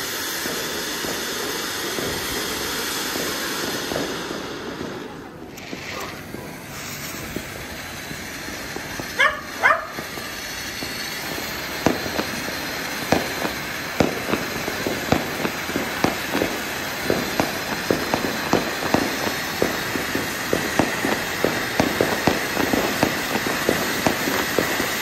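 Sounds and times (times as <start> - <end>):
firework crackling pops: 0.0 - 25.0
fountain firework hissing: 0.0 - 25.0
dog barks: 9.2 - 10.0.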